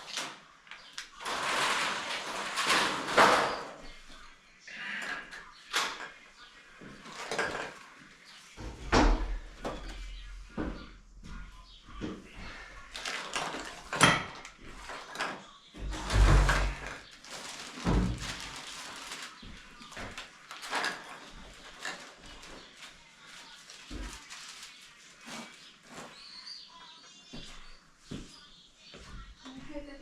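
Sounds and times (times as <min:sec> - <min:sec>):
shower parts knocking and clattering: 0:06.8 - 0:07.9, 0:13.0 - 0:22.6.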